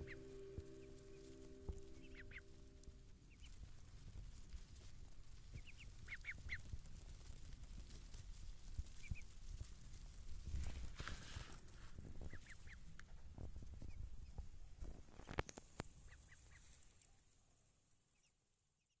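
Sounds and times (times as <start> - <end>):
low rumble: 0.0 - 4.7
duckling peeping: 0.0 - 6.8, 8.9 - 9.4, 12.2 - 12.9, 15.2 - 16.8.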